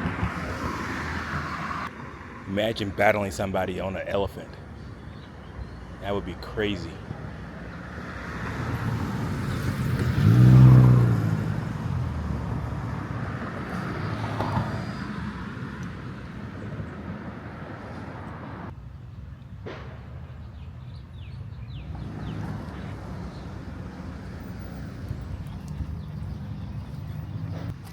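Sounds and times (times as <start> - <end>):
road noise: 0.0 - 27.9
vehicle engine passing: 8.2 - 15.7.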